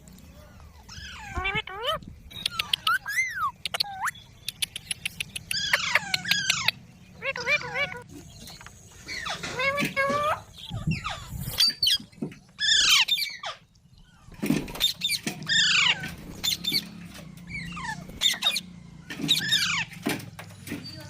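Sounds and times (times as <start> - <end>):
parrot squawking: 0.8 - 8.2, 9.0 - 12.0, 12.6 - 13.6, 14.8 - 16.9, 17.5 - 18.7, 19.3 - 19.9.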